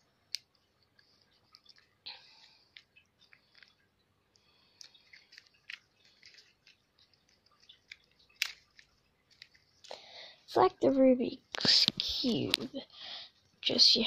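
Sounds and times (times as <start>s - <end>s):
fidget cube clicking and rattling: 4.8s - 9.6s.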